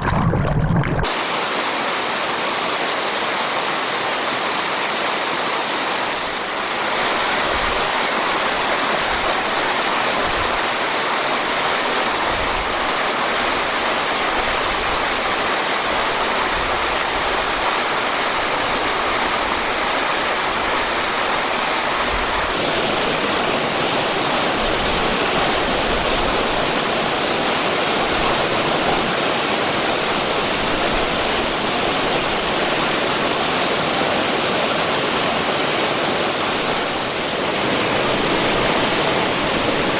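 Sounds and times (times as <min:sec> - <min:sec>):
water rushing loudly: 0:00.0 - 0:39.9.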